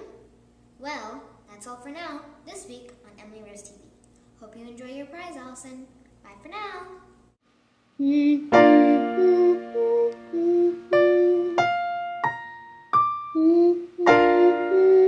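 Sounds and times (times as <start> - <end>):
electric piano notes and chords: 8.5 - 15.0.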